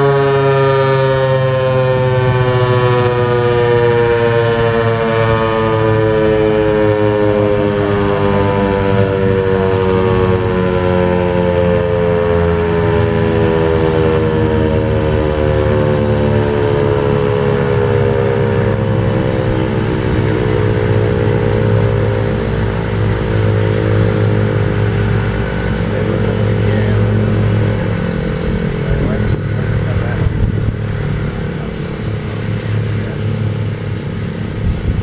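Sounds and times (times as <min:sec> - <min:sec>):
warning siren winding down: 0:00.0 - 0:35.0
steady low rumble: 0:07.4 - 0:35.0.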